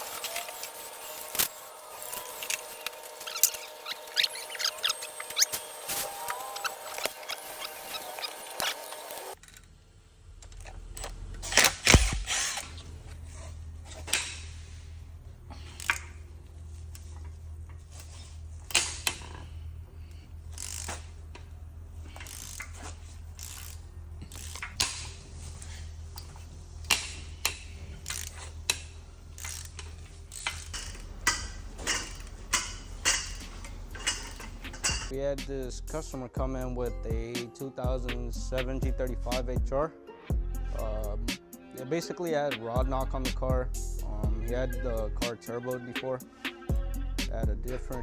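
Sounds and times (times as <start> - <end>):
steady low hum: 9.3 - 36.6
metal tools clinking: 13.8 - 14.8, 15.5 - 35.1.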